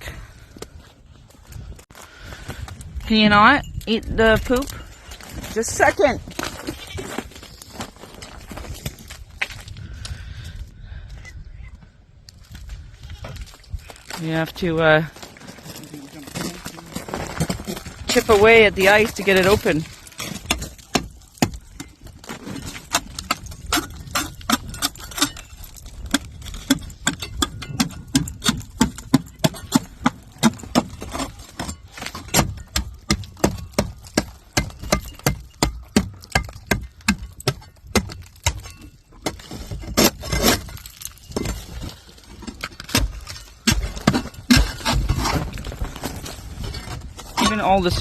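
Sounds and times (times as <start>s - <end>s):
breaking ice clinking: 15.2s - 46.0s.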